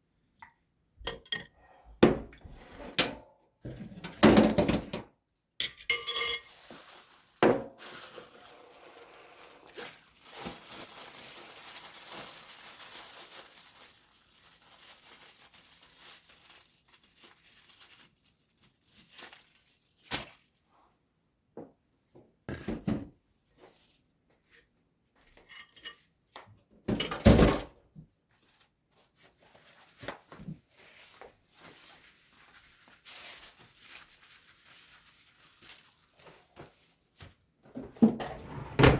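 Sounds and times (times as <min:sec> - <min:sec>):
plastic packaging crinkling: 0:06.4 - 0:20.6, 0:31.6 - 0:37.0
dishes clinking and knocking: 0:26.9 - 0:27.7, 0:37.8 - 0:38.9.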